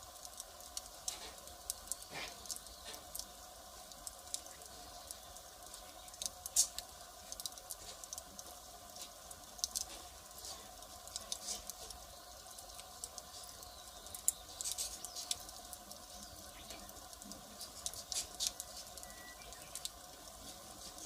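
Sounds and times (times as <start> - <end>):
wood fire crackling: 0.0 - 21.0.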